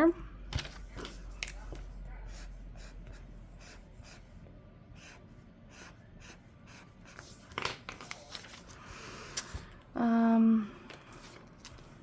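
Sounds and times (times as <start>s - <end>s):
paper rustling: 0.6s - 1.9s, 7.2s - 9.5s.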